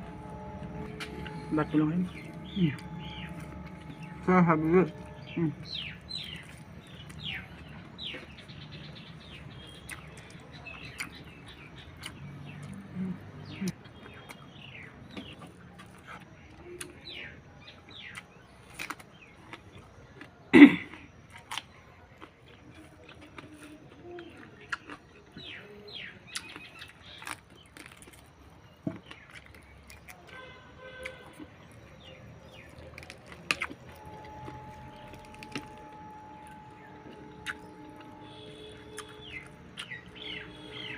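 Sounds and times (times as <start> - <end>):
steady held tone: 0.0 - 8.5, 33.8 - 40.9
small birds chirping: 0.0 - 20.3, 21.5 - 30.4, 31.0 - 40.9.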